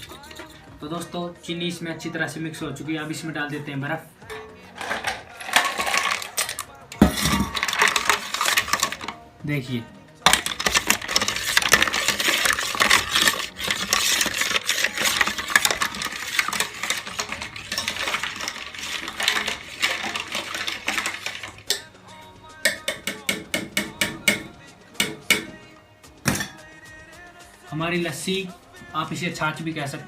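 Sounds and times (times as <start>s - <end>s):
ice cubes clinking in a drink: 4.4s - 9.2s, 10.2s - 21.9s.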